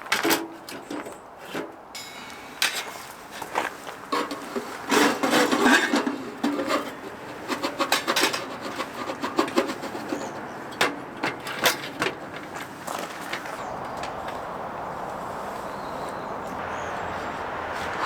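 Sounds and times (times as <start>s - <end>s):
objects clicking and knocking: 0.0s - 14.2s.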